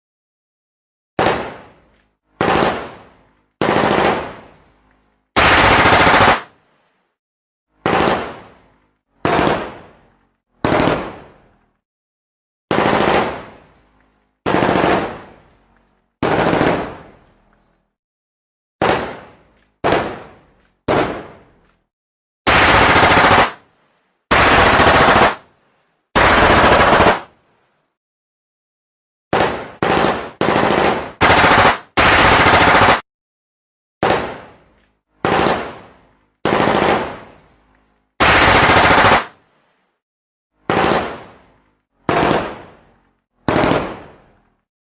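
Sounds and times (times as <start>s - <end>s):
automatic gunfire bursts: 2.4s - 2.9s, 3.6s - 4.4s, 5.4s - 6.5s, 7.8s - 8.4s, 10.6s - 11.2s, 12.7s - 13.5s, 14.4s - 15.2s, 16.2s - 17.0s, 22.5s - 23.6s, 24.3s - 25.4s, 26.2s - 27.3s, 29.3s - 33.0s, 35.2s - 35.8s, 36.4s - 37.2s, 38.2s - 39.4s, 40.7s - 41.2s, 42.1s - 42.6s, 43.5s - 44.0s.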